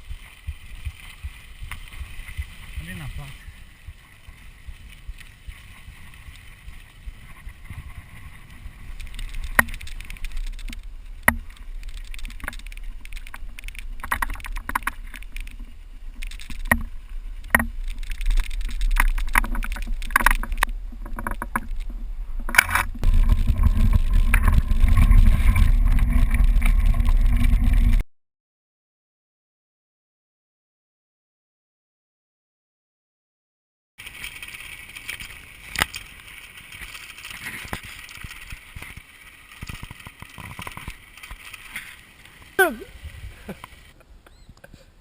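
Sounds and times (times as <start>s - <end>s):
wind rumble: 0.0s - 28.0s.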